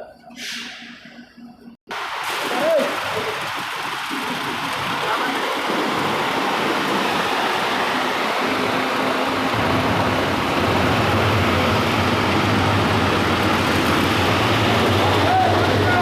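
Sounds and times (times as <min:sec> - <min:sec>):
concrete mixer running: 0:01.9 - 0:16.0
low engine hum: 0:03.9 - 0:16.0.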